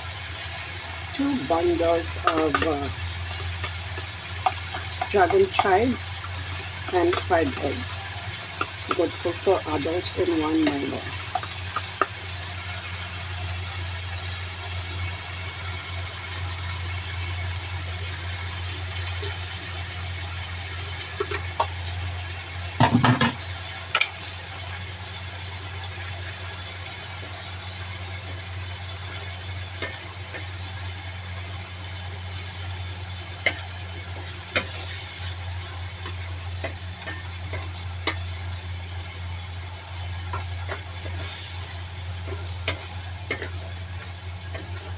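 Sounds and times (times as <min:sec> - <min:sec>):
eggs sizzling in oil: 0:00.0 - 0:44.9
utensil clanking against pan: 0:22.8 - 0:24.2.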